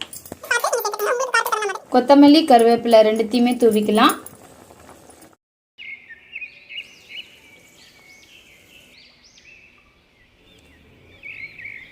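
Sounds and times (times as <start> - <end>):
birds chirping: 5.8 - 11.9.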